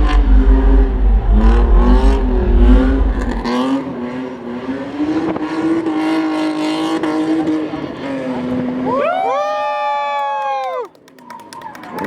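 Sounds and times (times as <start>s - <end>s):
heavy low rumble: 0.0s - 4.6s
car engine revving hard: 0.0s - 8.8s.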